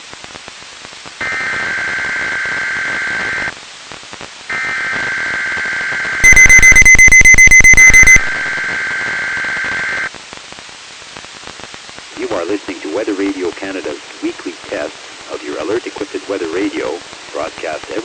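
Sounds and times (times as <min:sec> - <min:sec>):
rapid electronic beeping: 0:06.2 - 0:08.7
bursts of data tones: 0:06.2 - 0:10.1.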